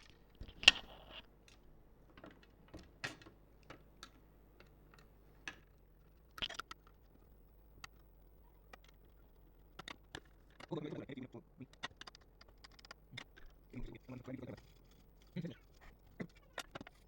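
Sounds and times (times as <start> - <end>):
tools clicking and tapping on laptop parts: 1.5 - 5.7, 8.7 - 10.8, 11.7 - 17.0.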